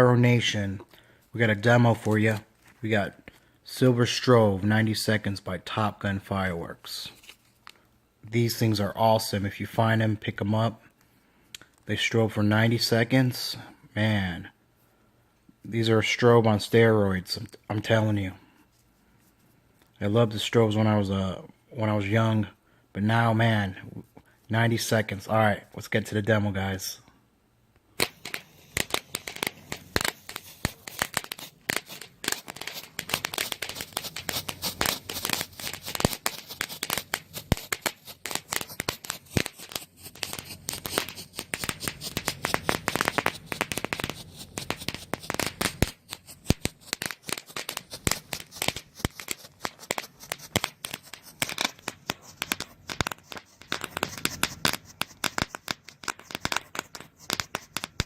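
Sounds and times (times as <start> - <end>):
strobe firework pops and crackles: 28.0 - 58.0.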